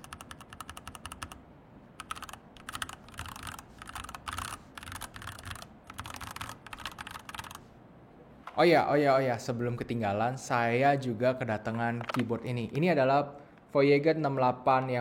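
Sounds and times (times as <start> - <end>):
mechanical keyboard typing: 0.0 - 1.4, 2.0 - 7.6.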